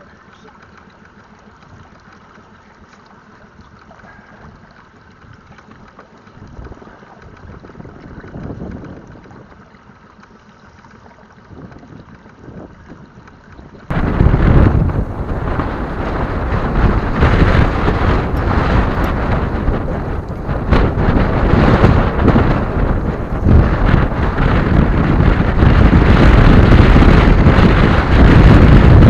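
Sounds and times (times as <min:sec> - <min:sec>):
wind buffeting microphone: 0:06.3 - 0:09.7, 0:11.4 - 0:29.0.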